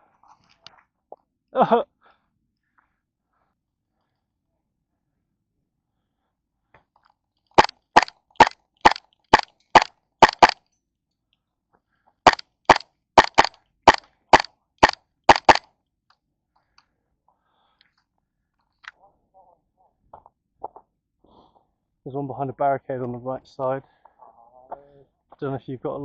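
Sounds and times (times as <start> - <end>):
airsoft gun single shots: 7.6 - 10.6, 12.3 - 15.6.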